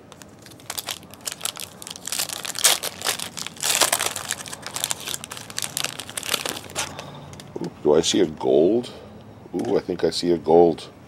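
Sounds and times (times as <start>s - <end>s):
wrapper crinkling and tearing: 0.0s - 7.0s.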